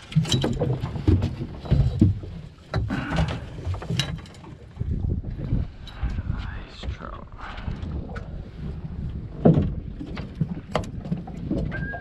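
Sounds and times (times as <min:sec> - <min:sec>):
wind on microphone: 0:04.7 - 0:12.0.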